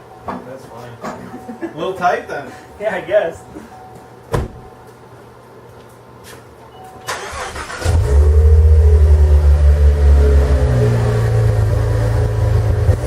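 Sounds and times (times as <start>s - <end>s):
car engine starting and idling: 7.0s - 13.0s.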